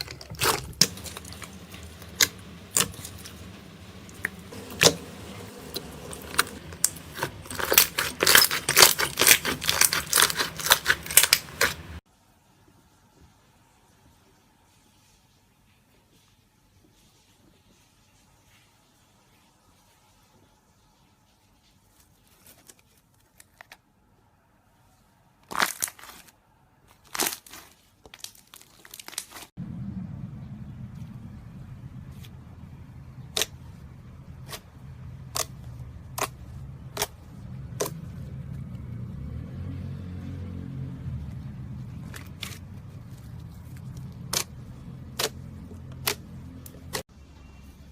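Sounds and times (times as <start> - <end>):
slime crackling pops: 0.0 - 11.8
slime crackling squishes: 0.0 - 12.0, 25.4 - 26.3, 26.9 - 29.5, 31.9 - 39.2, 41.1 - 47.1
slime squeezed by hand: 0.0 - 12.0
steady low hum: 0.0 - 12.0, 29.6 - 47.1.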